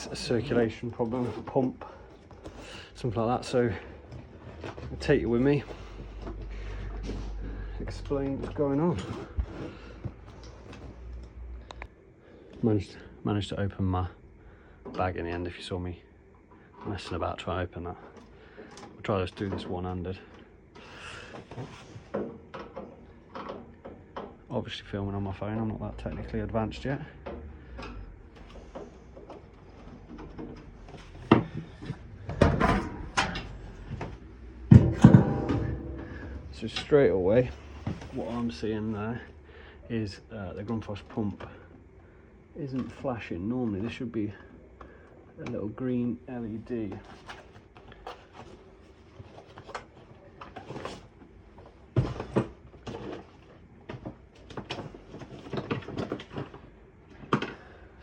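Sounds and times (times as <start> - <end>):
clicks and knocks of tool work: 18.0 - 24.5, 27.2 - 38.4
handling clatter and knocks: 27.2 - 38.7, 46.9 - 57.6.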